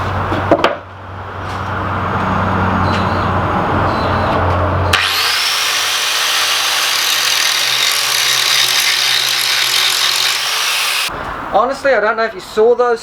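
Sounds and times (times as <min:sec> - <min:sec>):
grinder whining against iron: 0:04.9 - 0:11.1.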